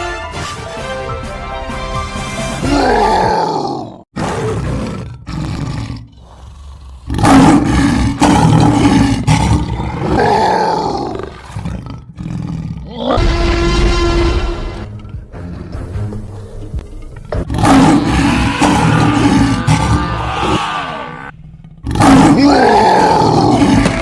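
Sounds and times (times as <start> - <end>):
loud animal roars: 2.7 - 13.8, 17.4 - 24.0.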